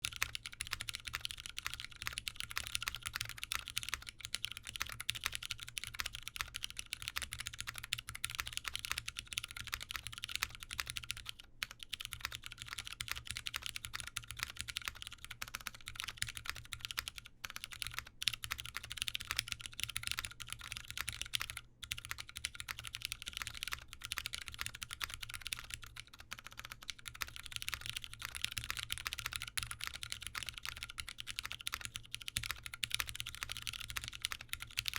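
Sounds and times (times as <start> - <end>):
mechanical keyboard typing: 0.0 - 34.9.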